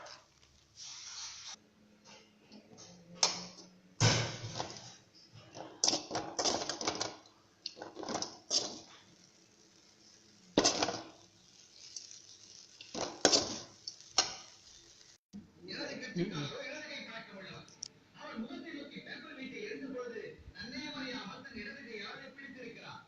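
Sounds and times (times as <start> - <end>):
hard objects clattering: 4.4 - 9.0.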